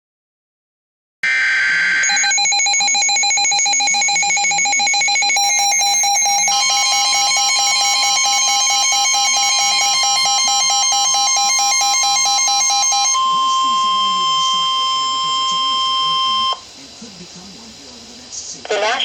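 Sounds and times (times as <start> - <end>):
rapidly pulsing alarm beep: 1.3 - 16.7
steady higher alert tone: 1.3 - 16.7.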